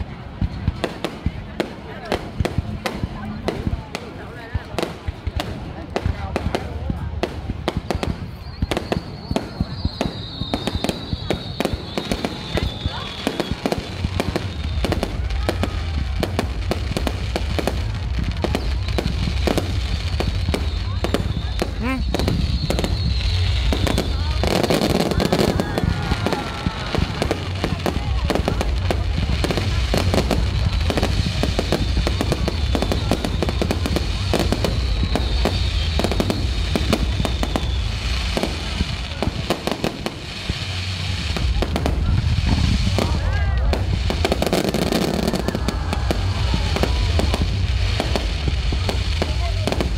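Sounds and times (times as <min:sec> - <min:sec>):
fireworks bangs: 0:00.0 - 0:49.9
steady low rumble: 0:13.7 - 0:49.9.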